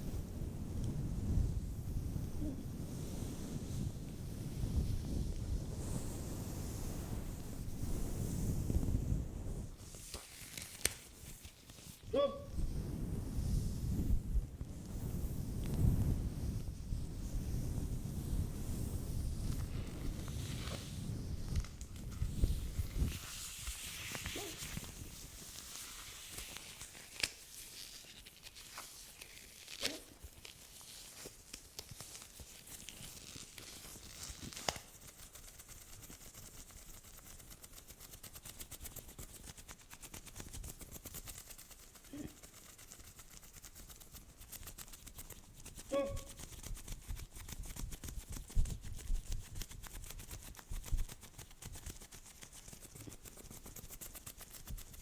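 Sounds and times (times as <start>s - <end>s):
woman hiccuping: 12.2s - 12.5s.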